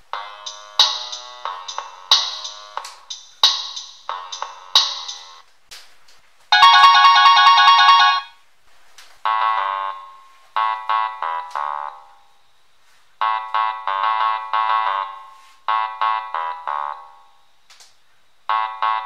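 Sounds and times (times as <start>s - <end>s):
synthesized ringtone melody: 0.1s - 5.4s, 6.5s - 8.4s, 9.3s - 12.1s, 13.2s - 17.4s, 18.5s - 19.0s.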